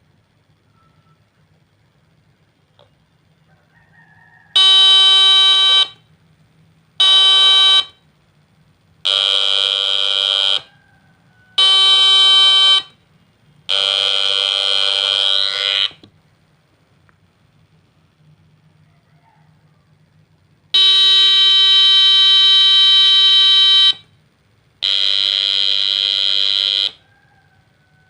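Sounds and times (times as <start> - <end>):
buzzy electronic doorbell tone: 9.1 - 10.7, 13.7 - 16.0.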